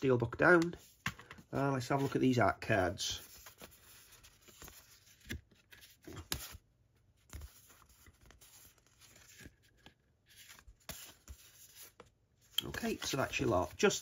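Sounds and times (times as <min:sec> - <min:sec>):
cards rubbing and sliding: 0:03.1 - 0:06.6, 0:07.2 - 0:14.0.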